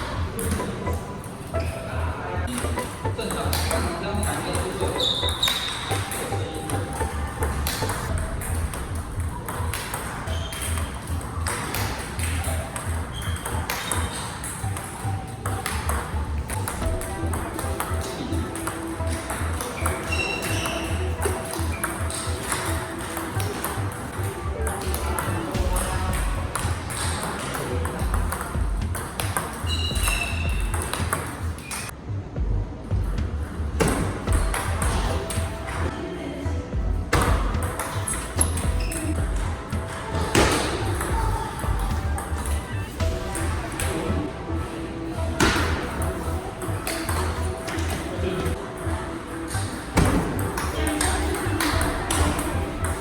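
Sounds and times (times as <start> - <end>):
background music with steady beat: 0.0 - 53.0
shoe squeak: 0.4 - 2.0, 2.6 - 7.2, 10.1 - 11.6, 12.2 - 15.6, 19.0 - 22.9, 29.3 - 31.9, 37.2 - 41.8
ping pong ball clicks: 2.4 - 31.9, 50.0 - 53.0.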